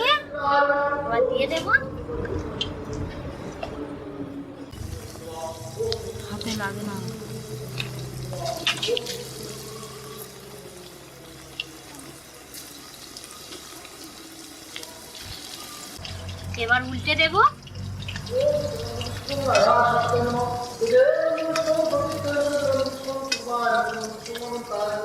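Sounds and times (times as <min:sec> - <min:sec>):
batter sizzling in hot oil: 0:04.8 - 0:16.7, 0:17.5 - 0:25.0.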